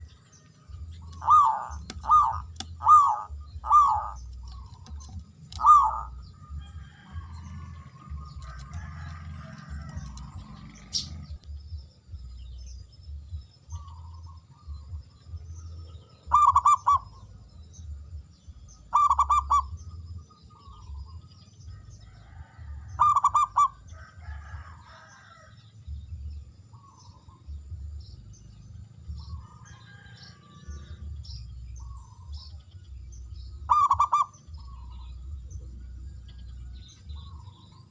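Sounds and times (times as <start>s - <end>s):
birds chirping faintly: 0.0s - 37.9s
dove cooing: 1.0s - 11.3s, 16.1s - 17.3s, 18.9s - 19.8s, 22.2s - 24.6s, 33.7s - 35.1s.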